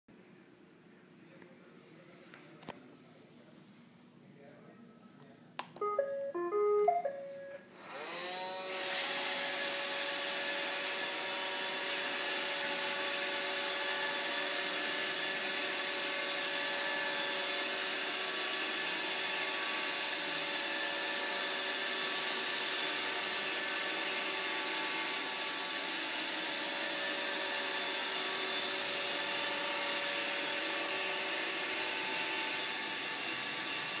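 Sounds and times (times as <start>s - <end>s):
vacuum cleaner motor whine: 7.7s - 34.0s.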